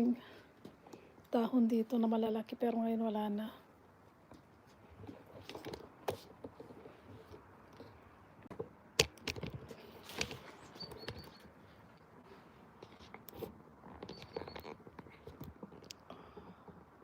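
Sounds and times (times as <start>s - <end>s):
light clicks and crackles: 12.8s - 17.0s.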